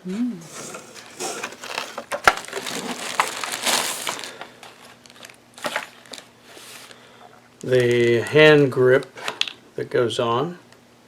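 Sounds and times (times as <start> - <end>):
packaging rustling and crinkling: 0.4 - 7.0.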